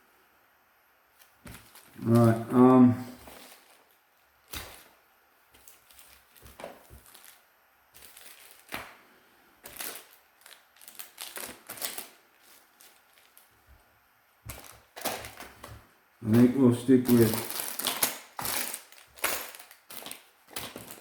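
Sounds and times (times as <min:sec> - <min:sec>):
plastic packaging crinkling: 0:01.2 - 0:09.0, 0:09.6 - 0:13.6, 0:14.5 - 0:21.0
small tools clicking and tapping: 0:17.3 - 0:21.0.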